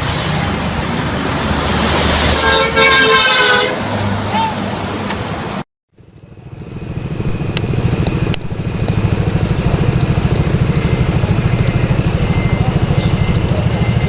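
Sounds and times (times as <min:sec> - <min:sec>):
engine idling with fast pulsing: 0:06.0 - 0:14.0.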